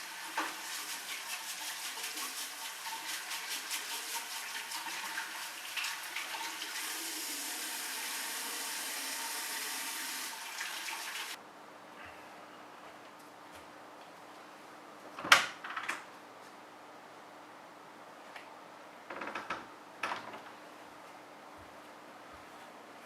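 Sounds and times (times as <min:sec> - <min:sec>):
tap water running into sink: 0:00.0 - 0:11.4.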